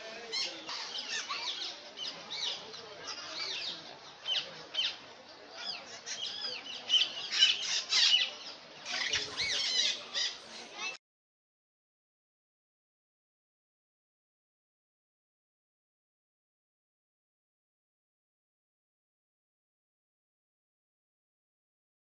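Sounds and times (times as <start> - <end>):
parrots chirping and squawking: 8.9 - 10.4.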